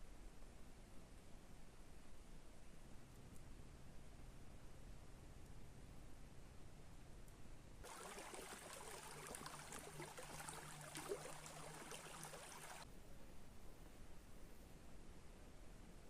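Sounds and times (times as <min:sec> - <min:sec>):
faint stream trickling: 0:07.8 - 0:12.9.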